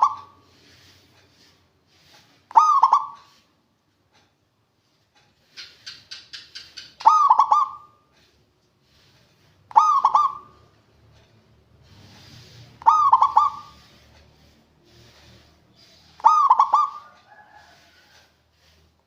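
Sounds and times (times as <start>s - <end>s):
zebra dove cooing: 0.0s - 0.4s, 2.5s - 3.4s, 7.0s - 7.9s, 9.7s - 10.6s, 12.8s - 13.9s, 16.2s - 17.8s.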